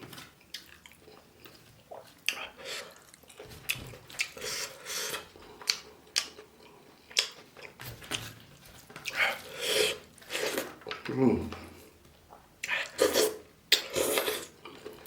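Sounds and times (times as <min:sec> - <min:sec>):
chewing and mouth noises: 0:00.4 - 0:07.8.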